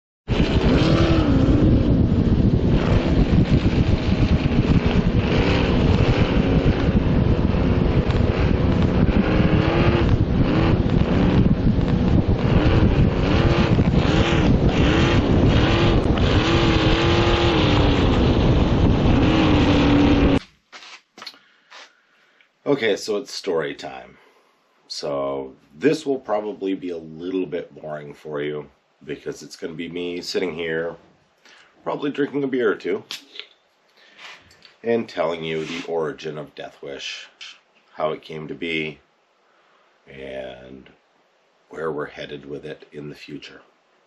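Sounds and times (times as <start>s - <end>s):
boat engine revving: 0.3s - 20.4s.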